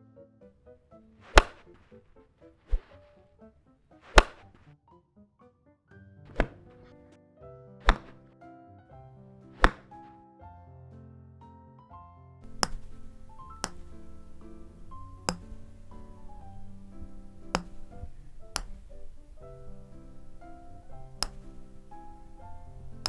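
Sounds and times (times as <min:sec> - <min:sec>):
quiet background music: 0:00.0 - 0:10.9, 0:12.4 - 0:23.0
clubhead striking ball: 0:12.4 - 0:23.0.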